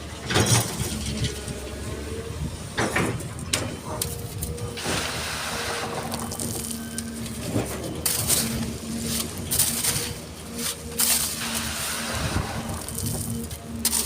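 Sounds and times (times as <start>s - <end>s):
excavator engine humming: 0.0s - 14.0s
sand and stones pouring: 4.8s - 14.0s.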